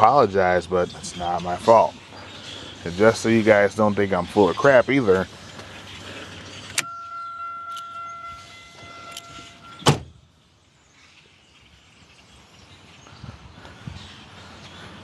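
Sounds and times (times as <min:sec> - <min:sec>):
car electronic warning tone: 0:06.8 - 0:10.3
car door shutting thud: 0:09.8 - 0:10.2.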